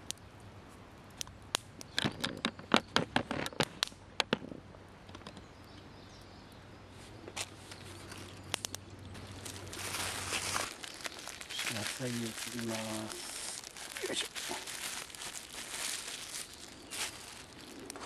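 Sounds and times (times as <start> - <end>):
sharp clicks and light knocks: 1.2 - 5.8.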